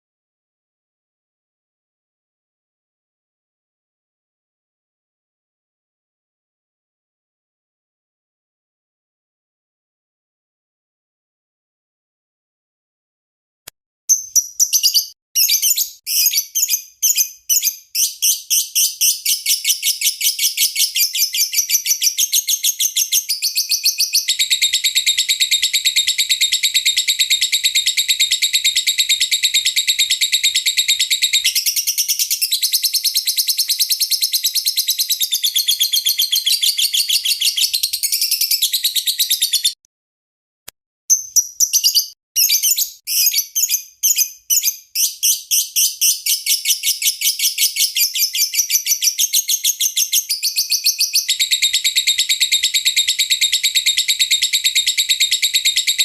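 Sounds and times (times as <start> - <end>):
lovebird chirping and trilling: 14.1 - 39.8, 41.1 - 56.0.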